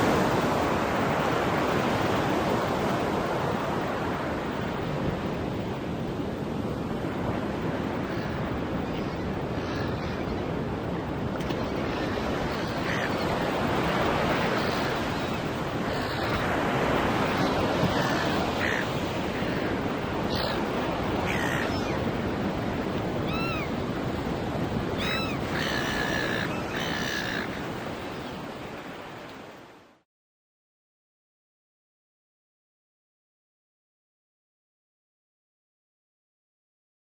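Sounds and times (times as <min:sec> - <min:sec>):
ocean surf on a beach: 0:00.0 - 0:30.0
gulls calling: 0:11.6 - 0:28.5.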